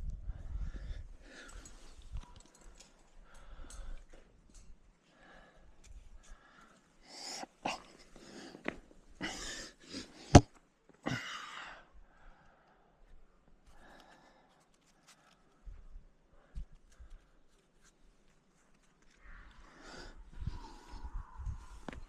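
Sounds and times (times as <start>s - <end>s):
person breathing hard: 0.2s - 4.2s, 5.1s - 10.4s, 19.6s - 22.0s.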